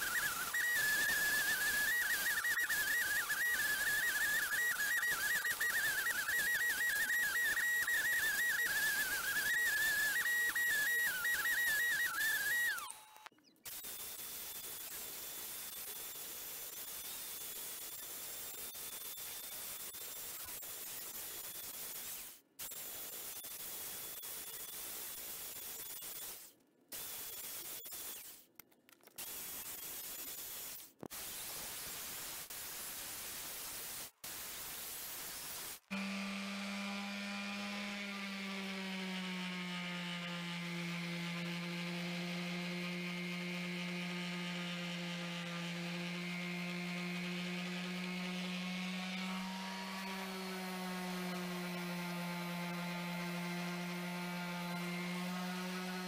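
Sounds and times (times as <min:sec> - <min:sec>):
electric motor hum: 0:35.9 - 0:56.0.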